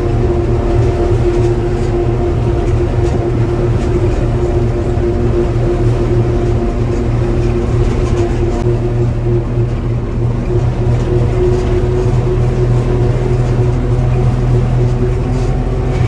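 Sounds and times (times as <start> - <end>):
bus engine drone: 0.0 - 16.0
road noise: 0.0 - 16.0.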